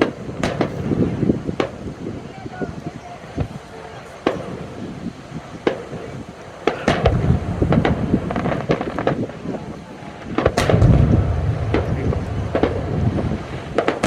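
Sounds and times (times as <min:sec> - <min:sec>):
fireworks cracking: 0:00.0 - 0:14.0
deep rumbling booms: 0:06.9 - 0:14.0.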